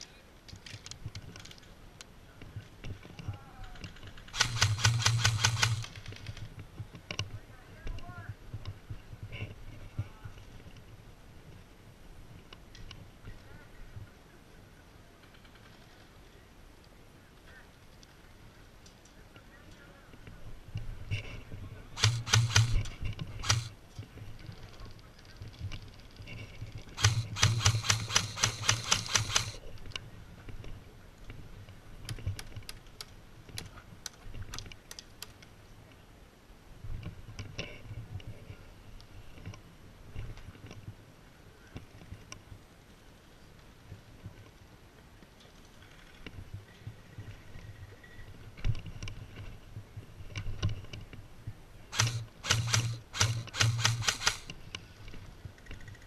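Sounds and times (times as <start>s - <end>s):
airsoft gun shots: 4.4s - 6.0s, 22.0s - 23.7s, 27.0s - 29.6s, 51.9s - 54.5s.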